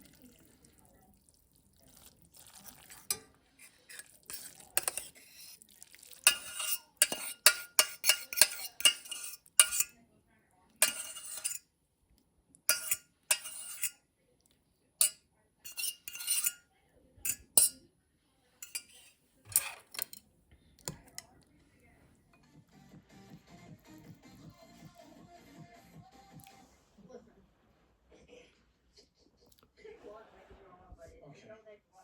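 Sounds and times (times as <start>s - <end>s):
dishes and cutlery clinking: 2.6s - 10.0s, 10.8s - 11.6s, 12.7s - 14.0s, 15.0s - 17.8s, 18.6s - 21.4s.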